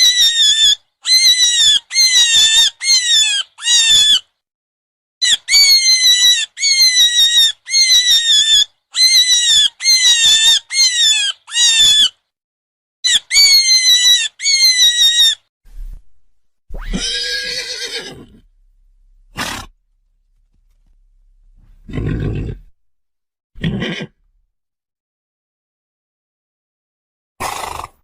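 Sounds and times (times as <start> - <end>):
animal squealing: 0.0 - 4.3, 5.2 - 12.2, 13.1 - 15.4, 16.7 - 18.4, 19.4 - 19.7
horse whinny: 16.7 - 18.5, 19.3 - 19.8, 21.8 - 22.7, 23.6 - 24.3, 27.4 - 28.0.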